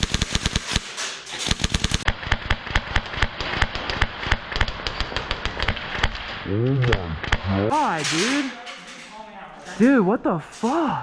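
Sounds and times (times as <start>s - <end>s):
airsoft guns firing: 0.0s - 6.3s.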